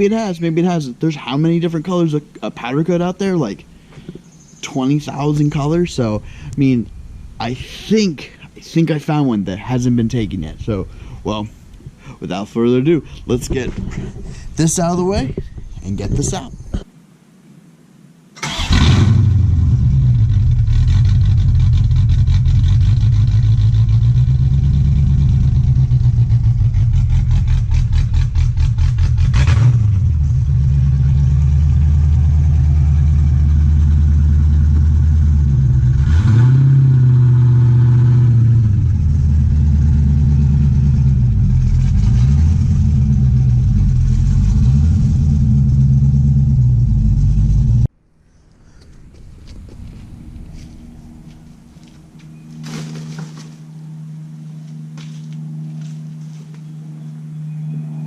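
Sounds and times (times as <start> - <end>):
car engine revving: 18.4 - 47.9.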